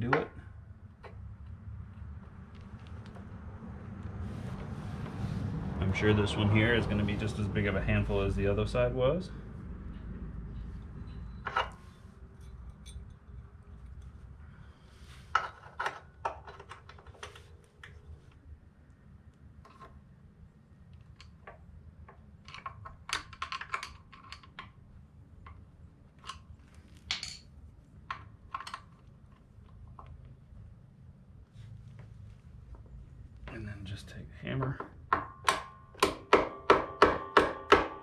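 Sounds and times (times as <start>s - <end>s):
metallic clicks and clinks: 11.0s - 14.2s.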